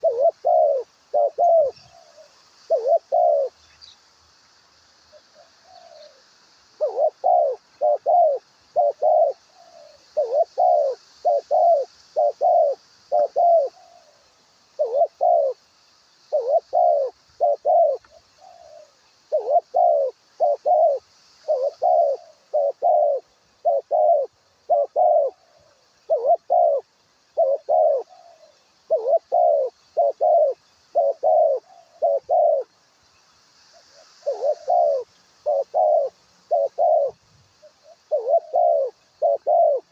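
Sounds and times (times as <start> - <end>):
dove cooing: 0.0 - 3.6, 5.3 - 6.2, 6.8 - 14.2, 14.8 - 15.6, 16.3 - 32.7, 33.9 - 39.9
faint high hiss: 0.0 - 39.9.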